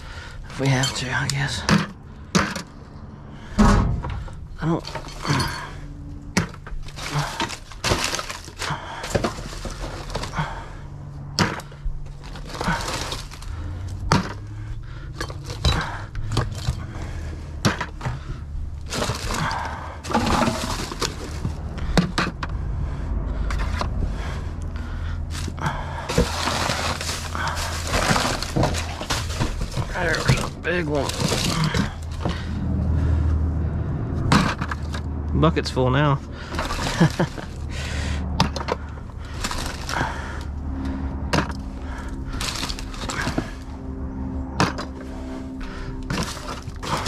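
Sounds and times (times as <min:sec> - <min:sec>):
metal oil filters clanking: 0:00.0 - 0:10.6, 0:11.2 - 0:22.6, 0:23.4 - 0:32.6
low steady hum: 0:00.0 - 0:47.0
rummaging scrapes: 0:03.4 - 0:22.5, 0:23.4 - 0:32.7, 0:34.2 - 0:35.1, 0:36.4 - 0:43.8, 0:44.4 - 0:47.0.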